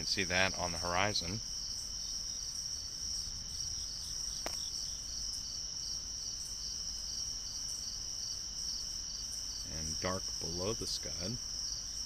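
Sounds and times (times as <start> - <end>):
crickets trilling: 0.0 - 12.0
pulsed insect chirp: 0.0 - 12.0.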